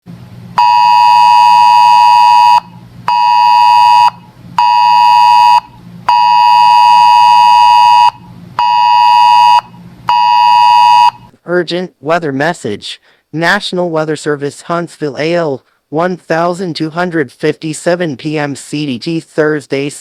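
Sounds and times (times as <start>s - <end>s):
buzzy electronic alert beeps: 0.6s - 11.3s.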